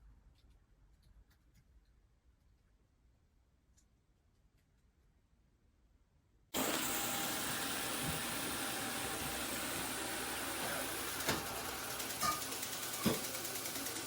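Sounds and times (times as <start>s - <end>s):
robot vacuum suction motor: 6.6s - 14.0s.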